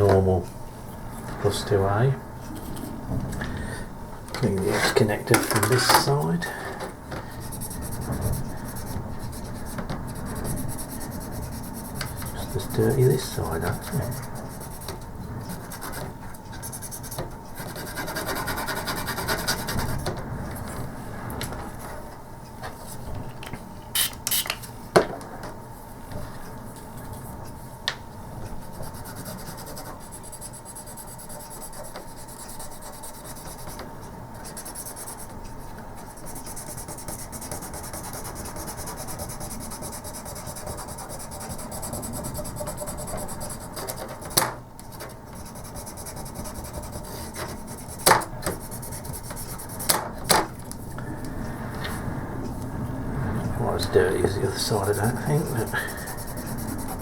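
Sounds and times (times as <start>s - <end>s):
cotton bud scrubbing circuit board: 53.8s - 57.0s.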